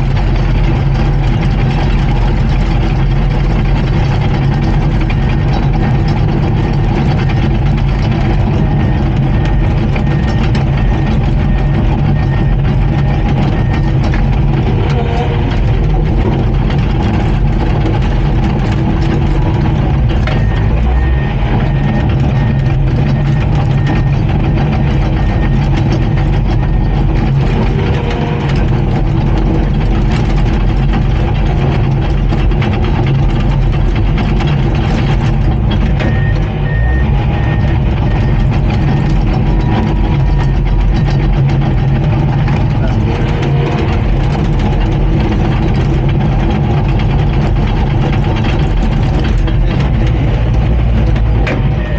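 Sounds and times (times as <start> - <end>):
bulldozer diesel engine running: 0.0 - 51.9
backup alarm beeping: 6.6 - 28.9, 33.8 - 45.9.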